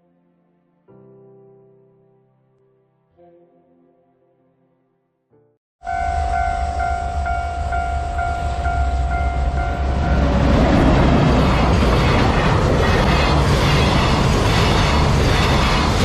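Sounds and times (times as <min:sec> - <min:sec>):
level crossing bell ringing: 0:05.8 - 0:10.4
train wheels rumbling on rail: 0:06.1 - 0:16.0.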